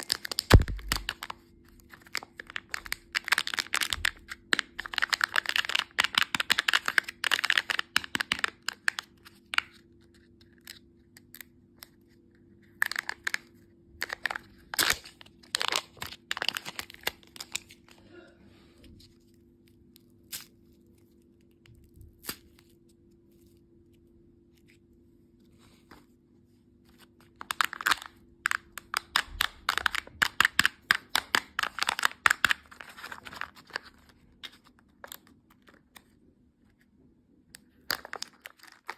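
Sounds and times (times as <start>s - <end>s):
plastic packaging crinkling: 0.0s - 10.8s, 12.8s - 18.0s, 26.9s - 36.1s, 37.8s - 38.9s.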